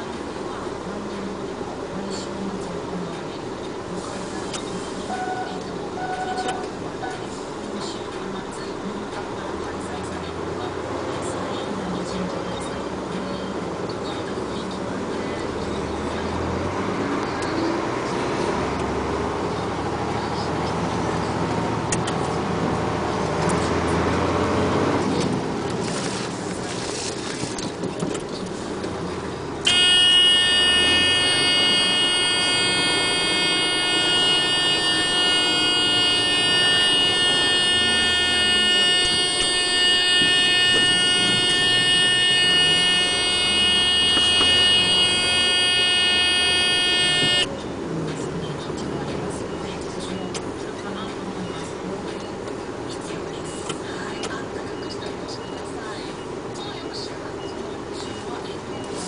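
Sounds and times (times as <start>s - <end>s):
loud steady electric horn: 3.9s - 7.4s, 29.6s - 47.6s.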